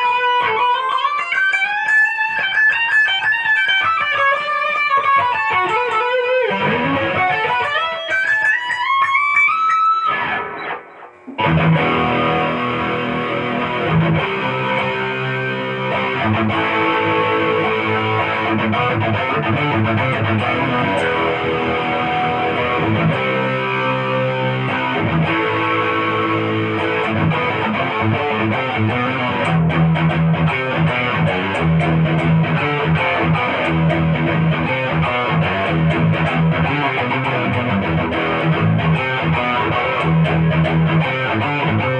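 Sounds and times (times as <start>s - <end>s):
distorted guitar chords and riffs: 0.0s - 41.9s
electric guitar runs: 9.5s - 41.9s.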